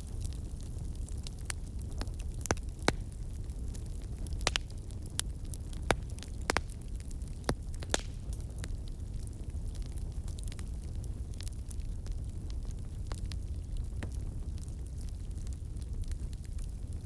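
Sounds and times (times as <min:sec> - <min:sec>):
campfire crackling: 0:00.0 - 0:17.0.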